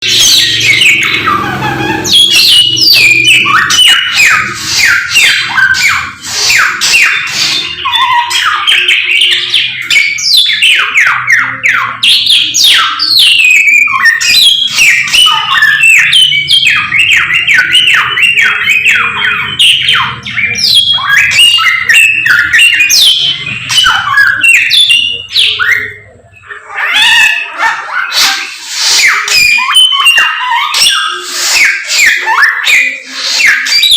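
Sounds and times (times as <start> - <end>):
songbird chirping and whistling: 0.0 - 33.9.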